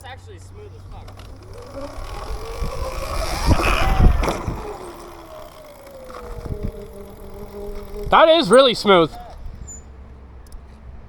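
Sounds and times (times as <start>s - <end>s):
motorbike engine whining: 0.0s - 11.0s
wind rumble on microphone: 1.3s - 8.2s.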